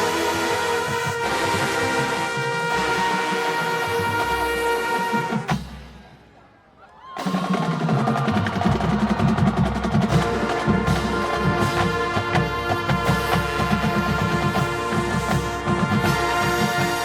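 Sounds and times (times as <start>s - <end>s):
marching band playing: 0.0s - 6.4s, 7.2s - 17.0s
steady drum beat: 7.2s - 17.0s.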